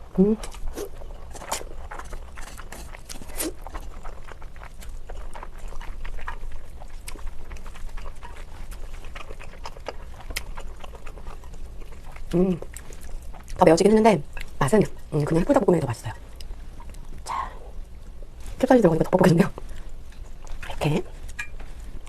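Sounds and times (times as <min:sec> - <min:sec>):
wet chewing and slurping: 0:00.0 - 0:22.0.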